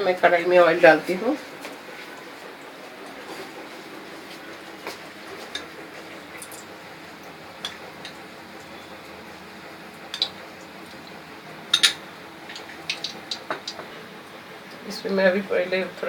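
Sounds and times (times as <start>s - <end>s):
faint background hum: 0.0s - 16.0s
utensils clinking on metal pan: 11.7s - 12.0s.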